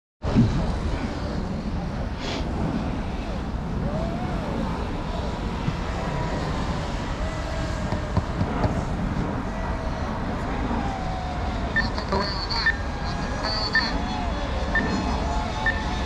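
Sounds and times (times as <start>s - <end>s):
racing boat motor whine: 0.3s - 16.0s.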